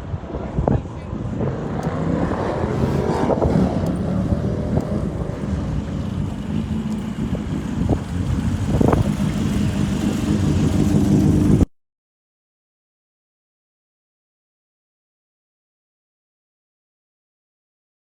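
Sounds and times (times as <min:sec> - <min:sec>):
car engine running: 0:00.6 - 0:11.7.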